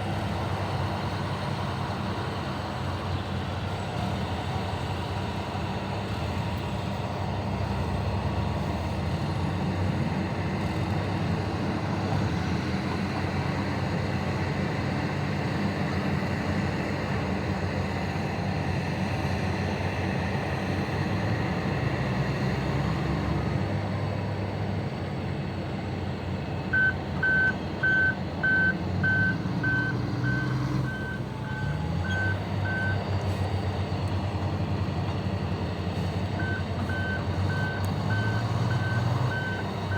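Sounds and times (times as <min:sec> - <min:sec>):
diesel machinery rumbling: 0:00.0 - 0:39.9
reversing alarm beeps: 0:26.7 - 0:33.0, 0:36.4 - 0:39.6.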